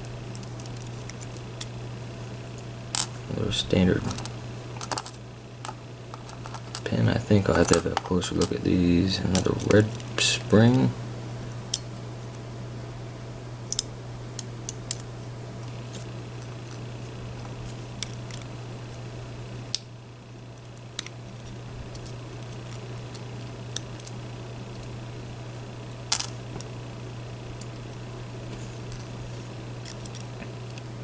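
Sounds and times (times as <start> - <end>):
small metal clicks: 0.0 - 1.8, 2.9 - 3.3, 3.9 - 8.6, 13.7 - 16.8, 20.5 - 25.0, 28.6 - 30.9
steady low hum: 0.0 - 31.0.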